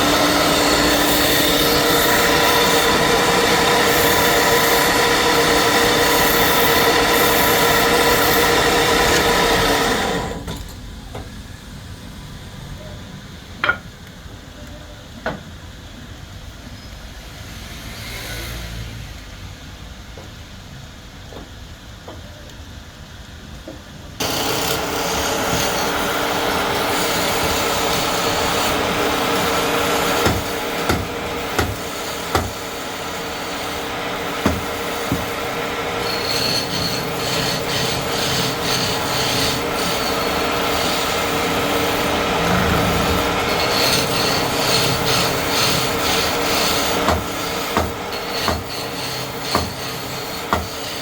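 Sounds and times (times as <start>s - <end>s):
tool scraping spinning wood: 0.0s - 10.4s, 24.2s - 51.0s
woodturning lathe whining: 0.0s - 10.5s, 24.2s - 51.0s
machine humming: 24.2s - 46.9s.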